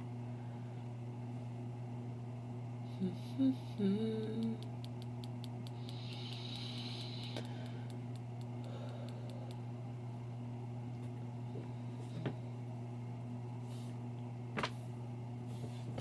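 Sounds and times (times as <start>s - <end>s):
steady low hum: 0.0s - 16.0s
woman humming: 2.8s - 7.8s.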